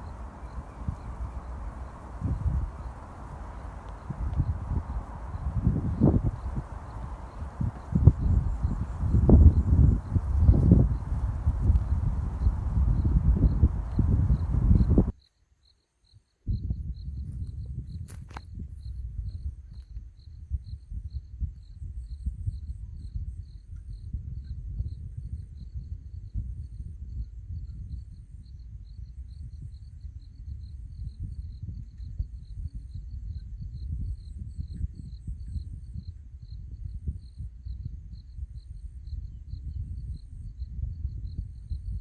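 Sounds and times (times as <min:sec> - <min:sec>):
gusty wind rumbling: 0:00.0 - 0:15.2, 0:20.3 - 0:42.0
wind rumbling: 0:00.0 - 0:15.2
faint high chirping: 0:00.0 - 0:17.5
crickets chirping: 0:00.0 - 0:42.0.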